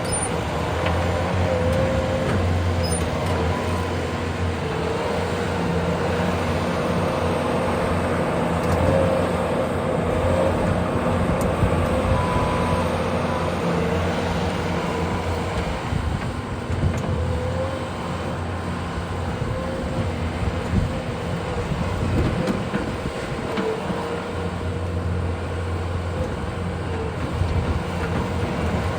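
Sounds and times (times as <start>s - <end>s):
skid steer engine running: 0.0s - 28.9s.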